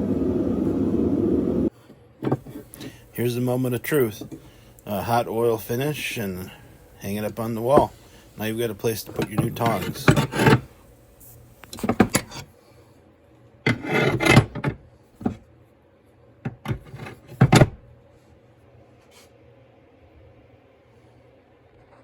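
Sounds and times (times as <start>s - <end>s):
low steady hum: 0.0s - 18.8s
metal tongs scraping on rack: 8.9s - 10.8s.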